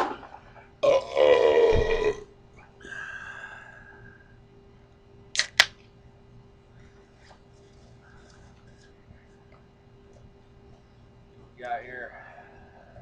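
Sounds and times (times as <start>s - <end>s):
man burping loudly: 0.8s - 2.3s
sharp clicks: 5.4s - 5.8s.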